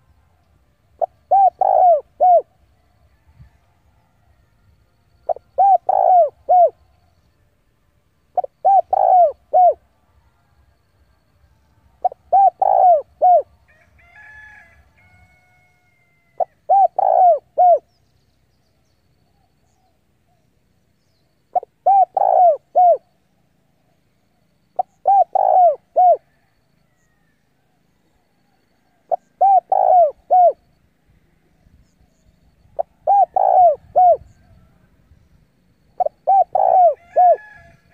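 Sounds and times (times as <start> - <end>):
dove cooing: 0.9 - 3.6, 5.2 - 6.9, 8.3 - 9.9, 11.9 - 13.6, 16.2 - 17.9, 21.5 - 23.2, 24.8 - 27.3, 28.5 - 30.8, 32.6 - 35.2, 35.8 - 37.9.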